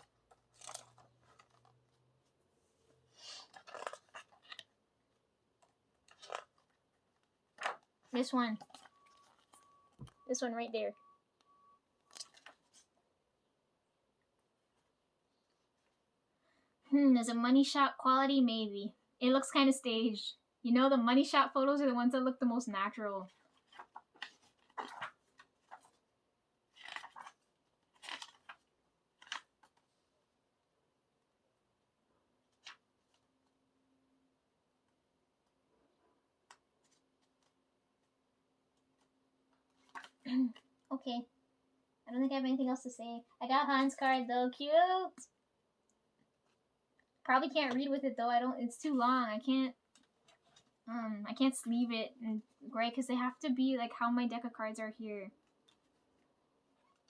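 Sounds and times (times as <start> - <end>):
photo cards rustling and clicking: 0.0 - 10.2, 12.0 - 13.0, 23.3 - 26.1, 26.7 - 30.1, 32.4 - 33.6, 36.4 - 40.9, 49.9 - 50.9, 55.4 - 57.0.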